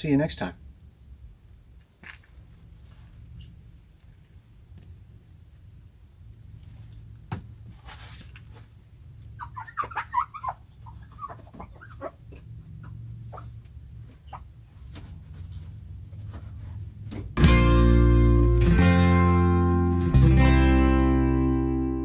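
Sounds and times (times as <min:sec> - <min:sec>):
chattering bird calls: 0:09.4 - 0:14.5.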